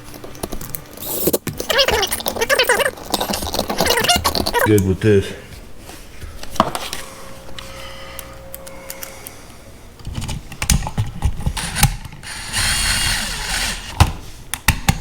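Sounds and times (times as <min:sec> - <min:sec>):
whirring: 0:11.5 - 0:14.1.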